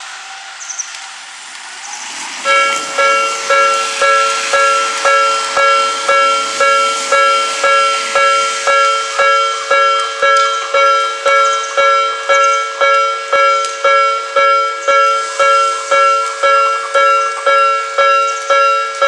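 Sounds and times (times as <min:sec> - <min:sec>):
steady background hiss: 0:00.0 - 0:19.0
level crossing alarm chime: 0:02.4 - 0:19.0.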